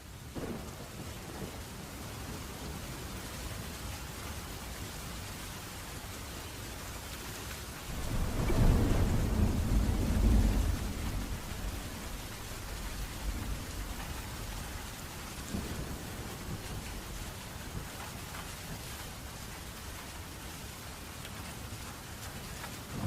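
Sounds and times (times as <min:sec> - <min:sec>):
steady rainfall: 0:00.0 - 0:23.0
thunder rumbling: 0:00.3 - 0:03.6, 0:07.8 - 0:20.0.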